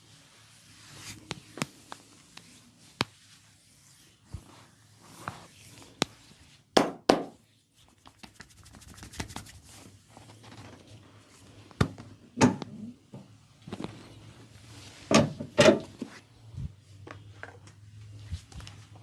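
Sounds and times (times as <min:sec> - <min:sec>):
hands rubbing over skin: 0:00.4 - 0:06.6, 0:07.4 - 0:10.0.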